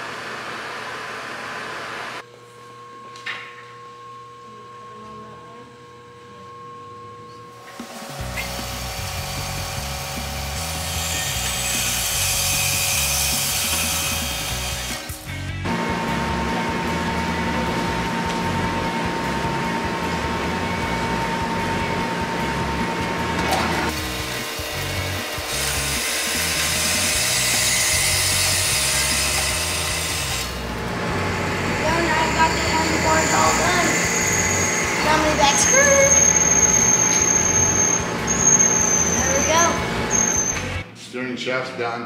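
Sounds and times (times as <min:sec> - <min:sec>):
power tool cutting steel: 0:07.6 - 0:40.8
power tool rasping on metal: 0:07.8 - 0:15.1, 0:23.9 - 0:30.6
background music: 0:08.1 - 0:36.5.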